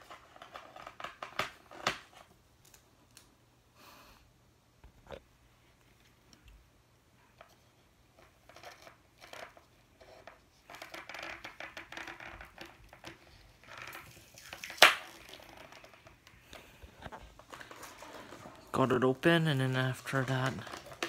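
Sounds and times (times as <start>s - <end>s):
packaging crinkling and scratching: 8.4s - 21.0s.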